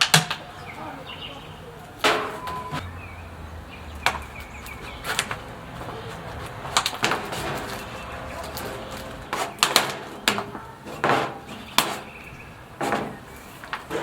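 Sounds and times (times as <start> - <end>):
faint bird chirps: 0.4 - 5.2.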